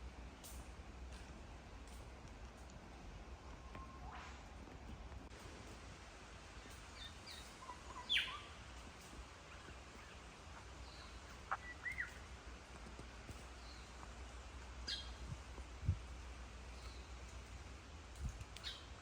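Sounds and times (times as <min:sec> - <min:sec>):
steady low rumble: 0:00.0 - 0:19.0
birds chirping and whistling: 0:07.0 - 0:08.5, 0:10.9 - 0:12.2.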